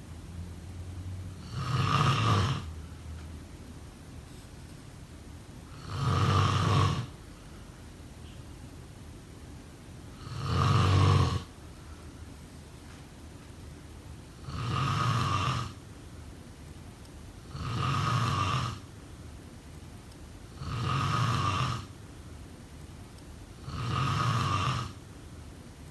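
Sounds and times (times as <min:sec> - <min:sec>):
faint steady hiss: 0:00.0 - 0:25.9
person snoring: 0:01.4 - 0:02.7, 0:05.7 - 0:07.1, 0:10.2 - 0:11.5, 0:14.4 - 0:15.8, 0:17.5 - 0:18.8, 0:20.5 - 0:21.9, 0:23.6 - 0:25.0.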